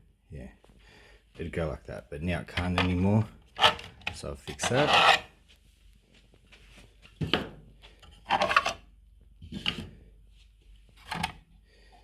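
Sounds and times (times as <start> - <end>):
plastic parts knocking and scraping: 2.5 - 5.2, 7.1 - 8.8, 9.4 - 10.0, 10.9 - 11.4.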